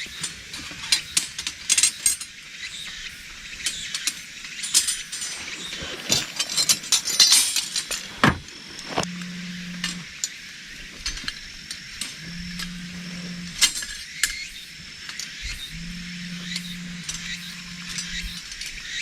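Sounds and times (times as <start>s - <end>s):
objects clicking and clinking: 4.0s - 9.1s
low steady hum: 5.2s - 10.1s, 12.0s - 13.8s, 15.7s - 18.5s.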